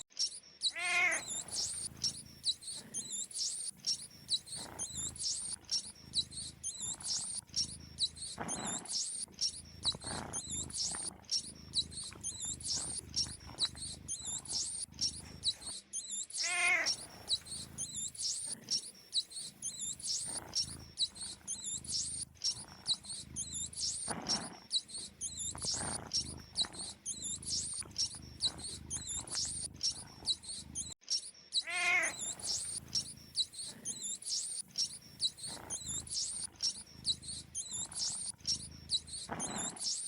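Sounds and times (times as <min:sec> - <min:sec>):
mice squeaking: 0:00.0 - 0:40.0
cat meowing: 0:00.7 - 0:03.0, 0:16.4 - 0:18.8, 0:31.6 - 0:34.0.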